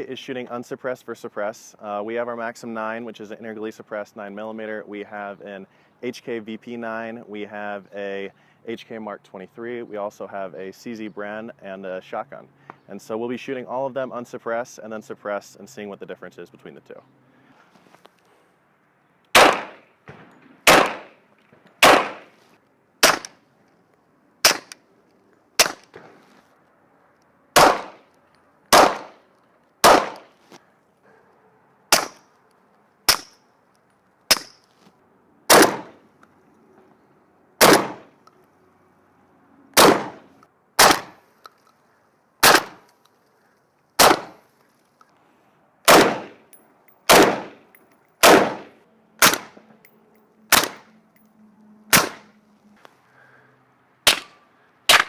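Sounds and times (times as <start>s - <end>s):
gunshots with ringing tail: 19.4s - 21.1s, 21.8s - 22.3s, 27.6s - 28.0s, 28.7s - 29.1s, 45.9s - 46.4s, 47.1s - 47.5s, 48.2s - 49.5s.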